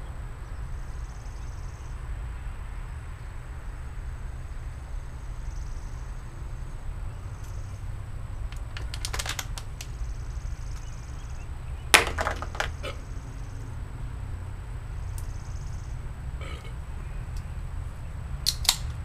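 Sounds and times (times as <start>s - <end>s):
quick rattling clicks: 8.5s - 10.0s
sharp crack: 8.5s - 11.0s, 11.9s - 13.0s, 18.4s - 19.0s.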